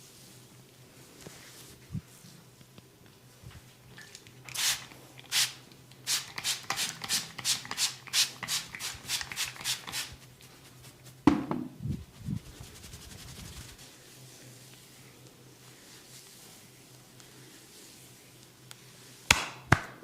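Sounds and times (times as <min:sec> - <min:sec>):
hands rubbing skin and hair: 0:04.6 - 0:19.3
sharp smack: 0:19.3 - 0:20.0.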